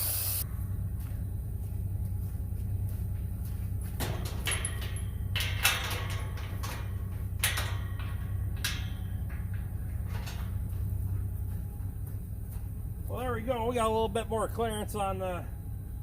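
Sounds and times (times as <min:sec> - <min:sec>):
low rumble: 0:00.4 - 0:14.5
metal gates knocking and clanking: 0:04.0 - 0:11.8.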